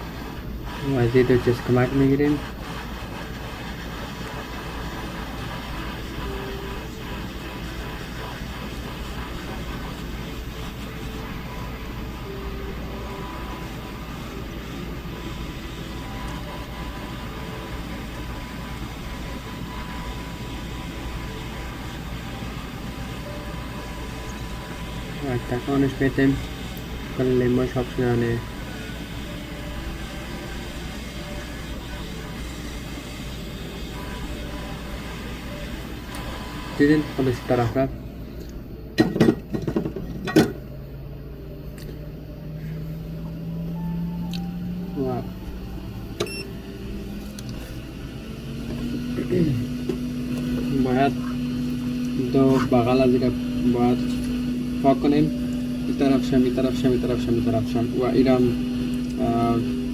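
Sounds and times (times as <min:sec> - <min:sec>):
faint steady whine: 0:00.0 - 0:59.9
hot-air station blowing: 0:00.0 - 0:59.9
steady low hum: 0:37.3 - 0:59.9.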